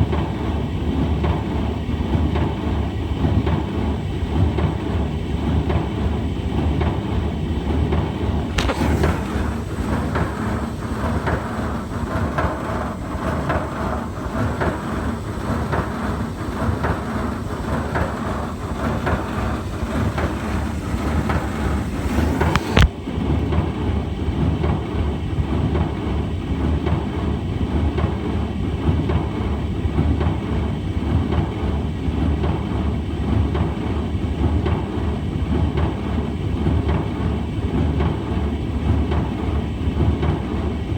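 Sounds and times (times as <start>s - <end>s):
tumble dryer rumbling and rattling: 0.0s - 40.9s
click: 8.5s - 10.4s, 19.0s - 22.9s.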